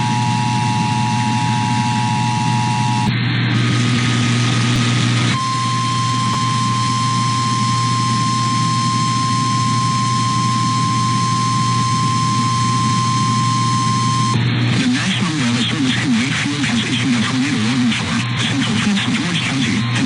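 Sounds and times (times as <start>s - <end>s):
steady high alarm tone: 0.0s - 3.1s, 4.8s - 14.4s.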